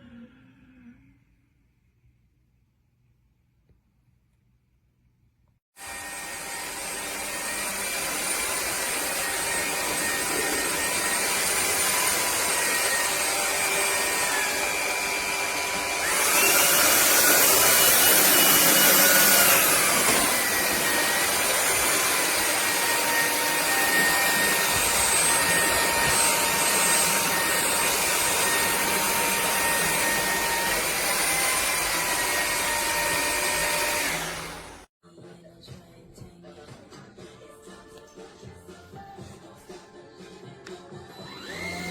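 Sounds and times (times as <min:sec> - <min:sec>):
stick vacuum running: 0:05.8 - 0:34.9, 0:41.2 - 0:41.9.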